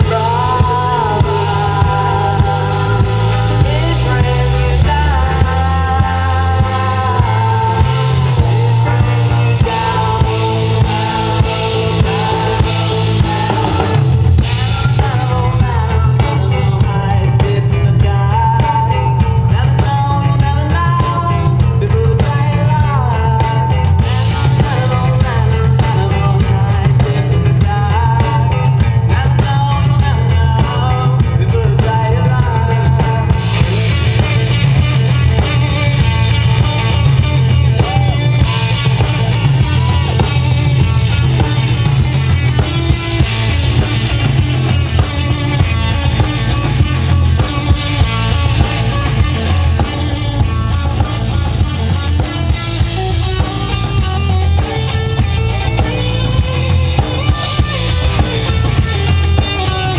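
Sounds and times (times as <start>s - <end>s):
person singing: 0.0s - 43.4s
live band music: 0.0s - 59.9s.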